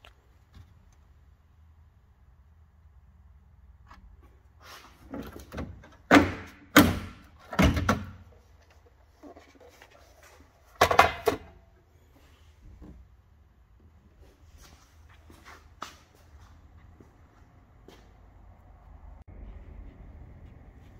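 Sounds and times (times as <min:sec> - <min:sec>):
knocks and clunks of car parts: 0:05.1 - 0:08.4, 0:10.8 - 0:11.7.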